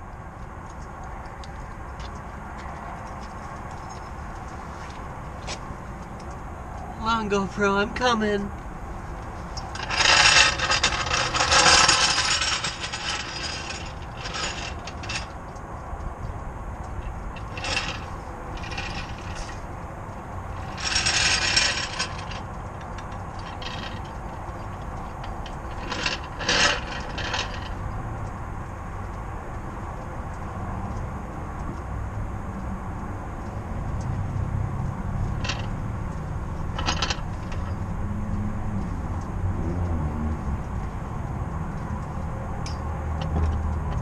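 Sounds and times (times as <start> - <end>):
scraping rubbing bursts: 9.4 - 15.3, 17.4 - 19.7, 20.5 - 24.6, 25.4 - 27.7.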